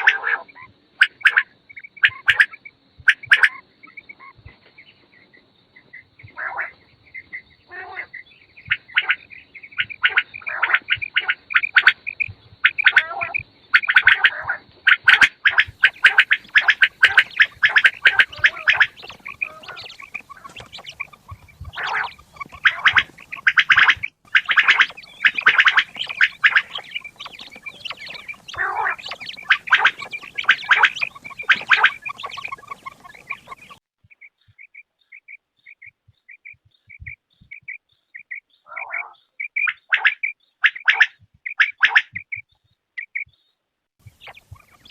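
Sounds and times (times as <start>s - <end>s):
quails chattering calls: 0.0s - 44.9s.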